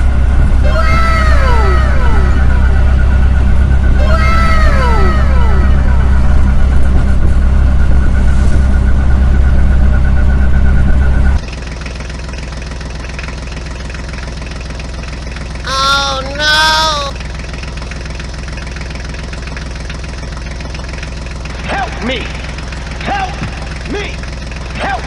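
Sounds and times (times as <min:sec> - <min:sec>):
truck engine running: 0:00.0 - 0:25.0
high voice calling out: 0:00.6 - 0:03.2, 0:04.0 - 0:06.2, 0:15.7 - 0:17.2.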